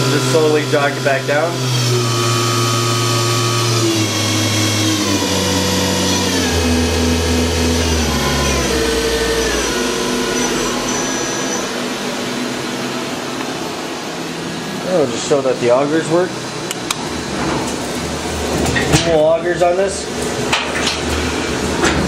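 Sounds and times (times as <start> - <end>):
machine spindle whine: 0.0 - 16.6.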